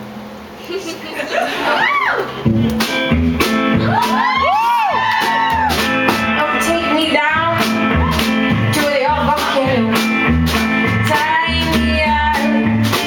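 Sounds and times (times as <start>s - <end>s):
bass line: 2.2s - 13.0s
strummed guitar: 2.4s - 13.0s
drum hits: 2.5s - 13.0s.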